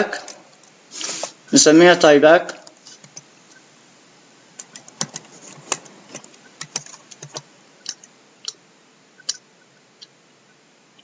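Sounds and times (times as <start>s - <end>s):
keyboard typing: 2.9s - 3.3s, 4.6s - 8.1s.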